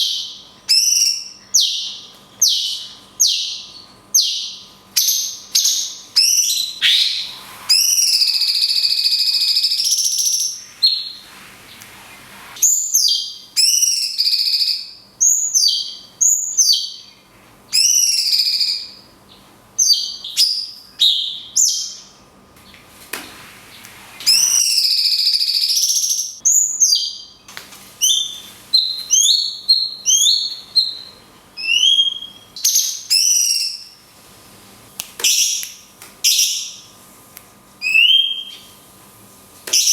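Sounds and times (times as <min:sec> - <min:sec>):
bird singing whistled notes: 0:00.0 - 0:11.2, 0:12.6 - 0:17.1, 0:19.8 - 0:22.1, 0:24.3 - 0:27.4, 0:28.0 - 0:33.9, 0:37.8 - 0:38.7.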